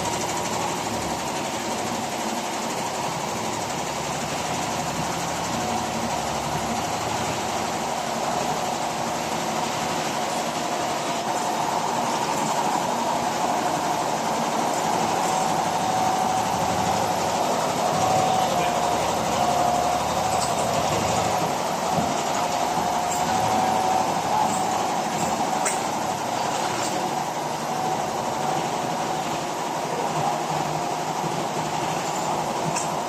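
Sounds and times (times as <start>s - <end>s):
quilting machine clattering: 0.0s - 33.0s.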